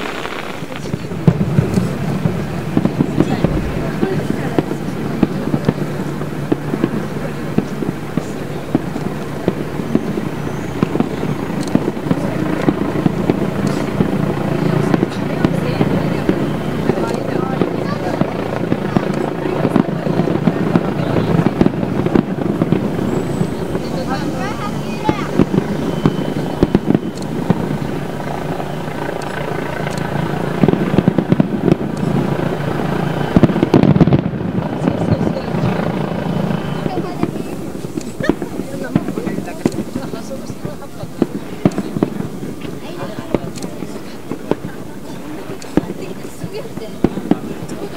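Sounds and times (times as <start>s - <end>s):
distant fireworks popping: 0.0s - 47.9s
low background hum: 1.4s - 18.4s.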